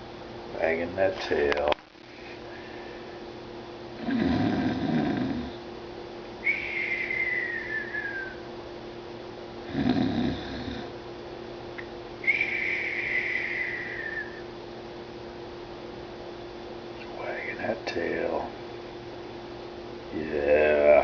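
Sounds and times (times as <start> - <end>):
cat snoring: 4.0 - 5.6, 9.7 - 10.9
cat whistling breath: 6.5 - 8.4, 12.2 - 14.4.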